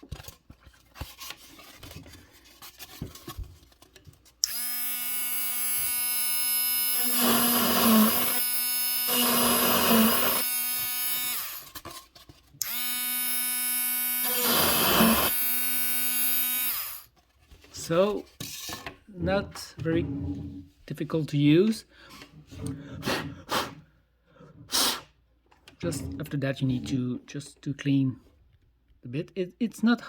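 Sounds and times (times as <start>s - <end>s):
drill bit grinding into foam: 4.4s - 11.8s, 12.6s - 17.1s
rotary tool motor whining: 4.4s - 11.8s, 12.6s - 17.1s.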